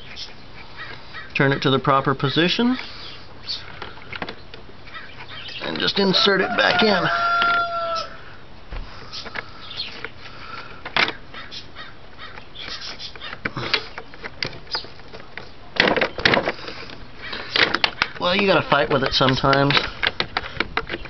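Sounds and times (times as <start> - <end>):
hard plastic clicks and knocks: 13.2 - 21.0.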